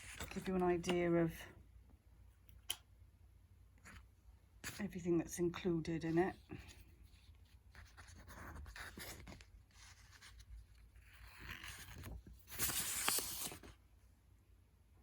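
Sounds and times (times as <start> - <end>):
paper leaflets rustling: 7.7 - 13.8.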